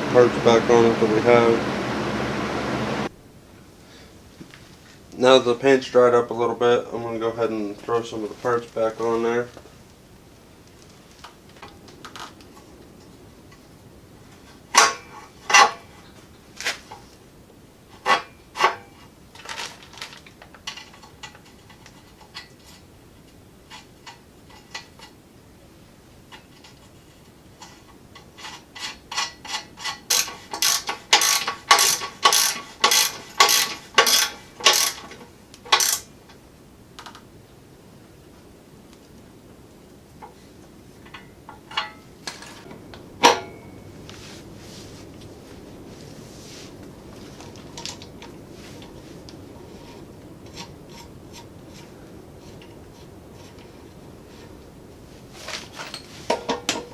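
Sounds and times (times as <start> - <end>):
metal parts clicking and clinking: 41.1 - 42.7, 55.4 - 56.9.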